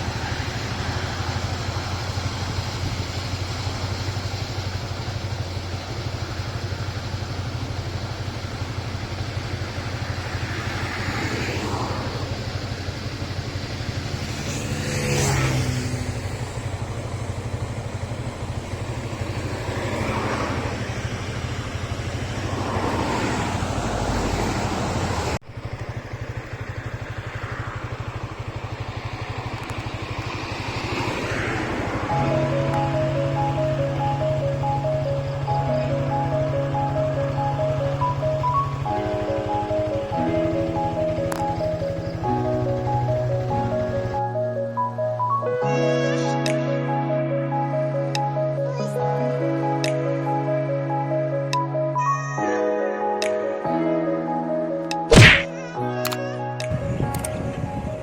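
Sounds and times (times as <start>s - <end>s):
excavator diesel engine running: 0.0s - 45.4s.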